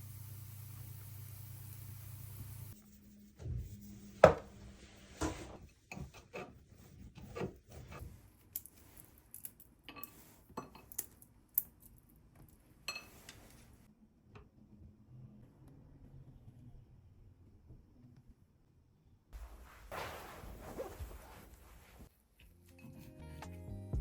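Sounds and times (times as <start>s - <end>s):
dishes and cutlery clinking: 9.9s - 11.2s, 12.8s - 13.6s.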